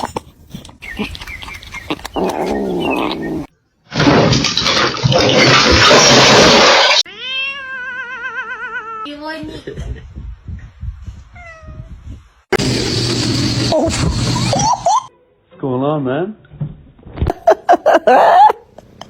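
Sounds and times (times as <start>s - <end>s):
cat yowling: 7.1s - 9.1s.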